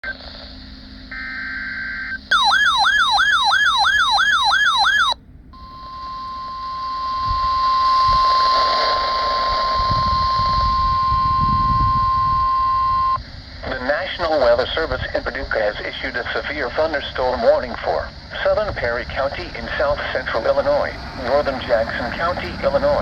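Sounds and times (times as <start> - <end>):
steady warning alarm tone: 0.0 - 13.2, 17.8 - 23.0
buzzy data burst: 0.0 - 23.0
radio hiss: 0.0 - 23.0
warbling siren-like alert: 2.2 - 13.2.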